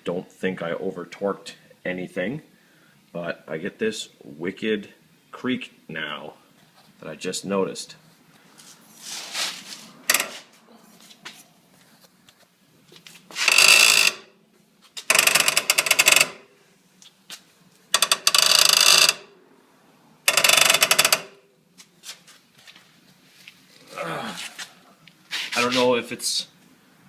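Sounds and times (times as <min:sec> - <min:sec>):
suspension creaking: 0:09.7 - 0:10.6, 0:13.3 - 0:14.3, 0:15.0 - 0:16.4, 0:17.9 - 0:19.3, 0:20.3 - 0:21.4.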